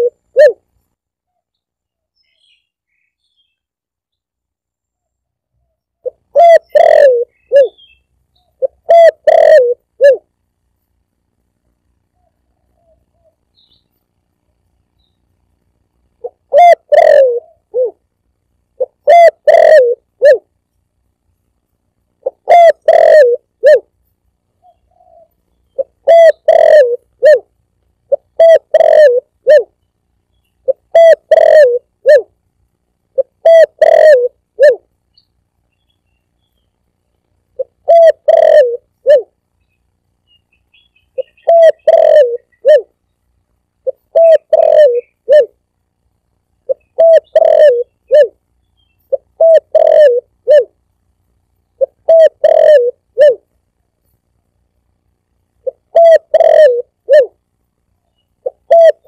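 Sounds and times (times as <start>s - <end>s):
dove cooing: 0.0s - 0.7s, 6.0s - 10.3s, 12.2s - 13.8s, 16.2s - 18.0s, 18.8s - 20.5s, 22.2s - 23.9s, 24.6s - 27.5s, 28.1s - 29.7s, 30.6s - 32.3s, 33.2s - 34.9s, 37.6s - 39.4s, 41.2s - 42.9s, 43.8s - 45.6s, 46.6s - 48.4s, 49.1s - 50.8s, 51.8s - 53.5s, 55.6s - 57.4s, 58.4s - 59.0s.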